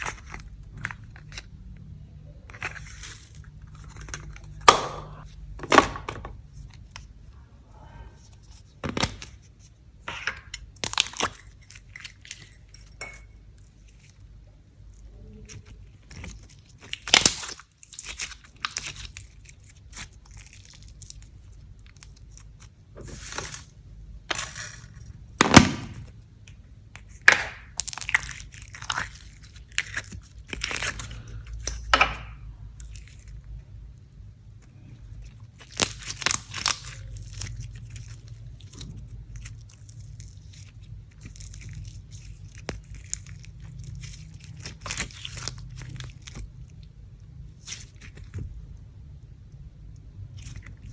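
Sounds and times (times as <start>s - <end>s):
slime crackling and popping: 8.5s - 12.8s, 15.3s - 33.5s, 34.6s - 48.7s.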